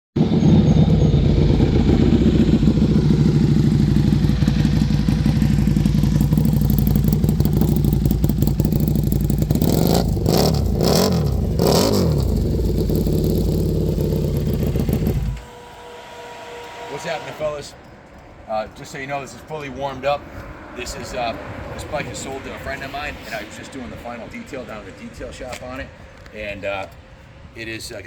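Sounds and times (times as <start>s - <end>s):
motorcycle engine idling and revving: 0.2s - 17.1s.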